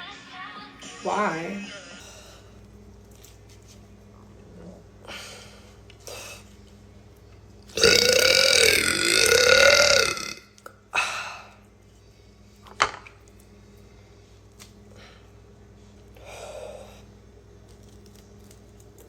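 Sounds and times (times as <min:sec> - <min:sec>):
woman burping loudly: 0:07.8 - 0:10.6.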